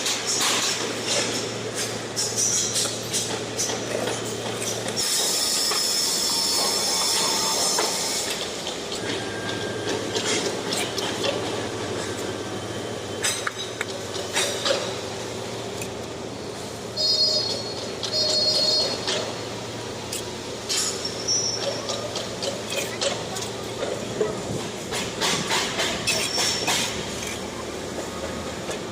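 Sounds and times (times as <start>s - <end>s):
high squealing scrape: 5.0s - 8.4s.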